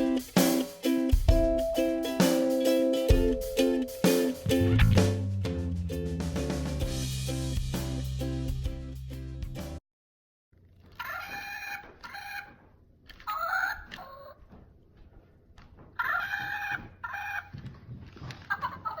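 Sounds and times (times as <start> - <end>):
pitched fowl-like calls: 11.0 - 12.6, 16.0 - 17.5.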